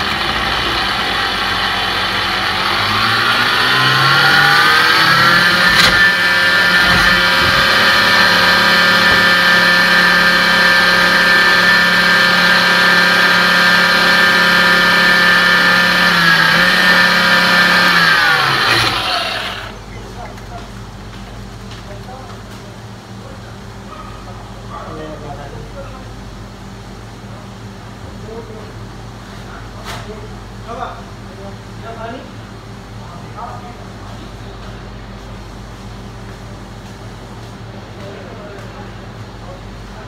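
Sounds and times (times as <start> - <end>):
kitchen appliance motor: 0.0 - 19.8.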